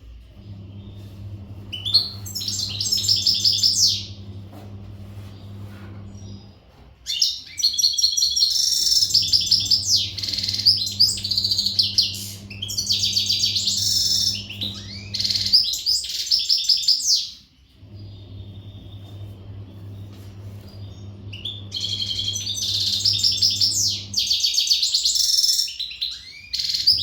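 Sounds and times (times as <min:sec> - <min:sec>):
finch singing twittering song: 0:01.7 - 0:04.2, 0:07.0 - 0:17.4, 0:20.8 - 0:27.0.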